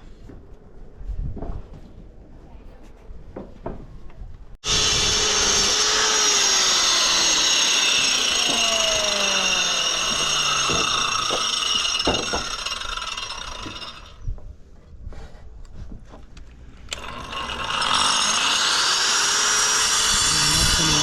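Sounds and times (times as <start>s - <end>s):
power tool high-pitched whine: 4.6s - 14.2s, 16.9s - 21.0s.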